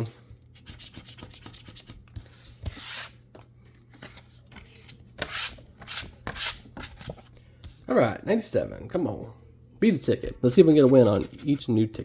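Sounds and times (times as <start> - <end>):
scratching lottery ticket: 10.6 - 11.9.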